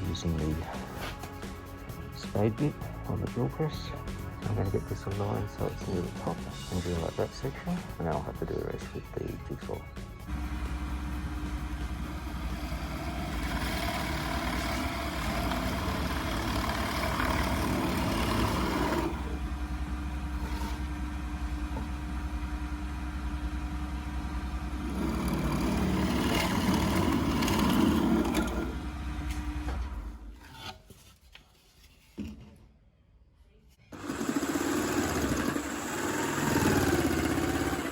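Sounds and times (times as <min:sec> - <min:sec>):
drill press motor running: 0:10.3 - 0:30.3, 0:33.9 - 0:37.9
spade bit boring into wood: 0:12.9 - 0:19.4, 0:24.8 - 0:28.8, 0:34.0 - 0:37.9.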